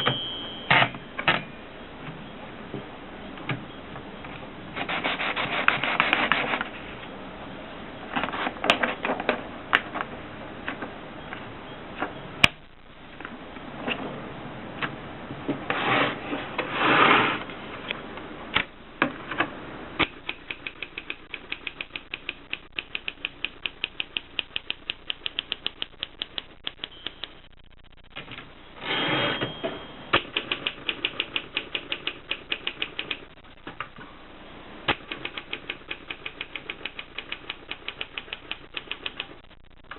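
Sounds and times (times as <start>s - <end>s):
typewriter rubbing sliding sound: 4.8s - 6.7s, 15.7s - 17.5s
typewriter keys clicking: 20.0s - 27.3s, 30.1s - 33.3s, 34.9s - 39.4s.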